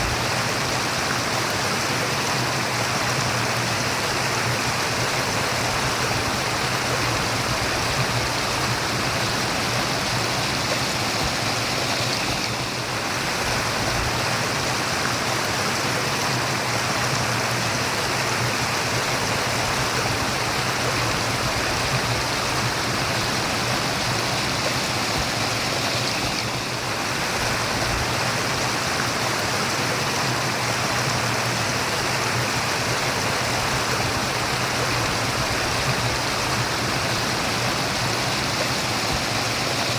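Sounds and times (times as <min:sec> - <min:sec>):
stream rushing and babbling: 0:00.0 - 0:39.9.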